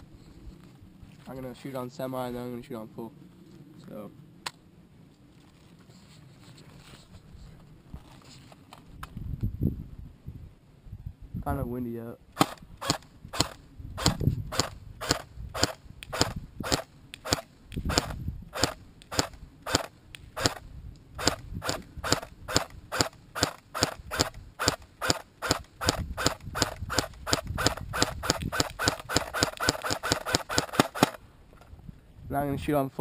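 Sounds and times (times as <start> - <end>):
wind on microphone: 8.8 - 11.8, 12.4 - 32.8
airsoft rifle single shots: 12.4 - 20.6.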